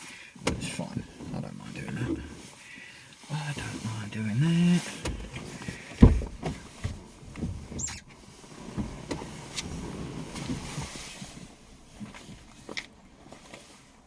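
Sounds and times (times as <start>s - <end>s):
knocks inside a car: 6.0s - 7.7s.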